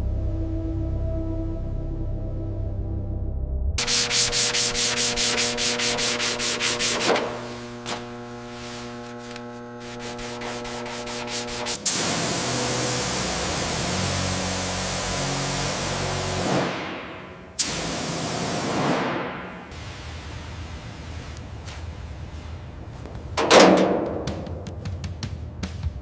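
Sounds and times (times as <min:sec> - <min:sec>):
sandpaper scraping car metal: 0:03.8 - 0:17.2
steady hiss: 0:03.8 - 0:23.9.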